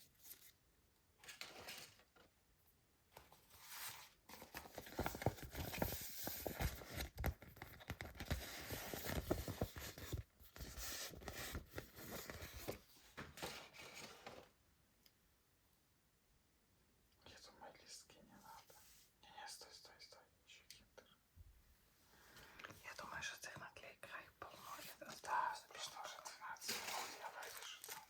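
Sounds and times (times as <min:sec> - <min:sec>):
packaging tearing and crinkling: 0:26.7 - 0:28.0.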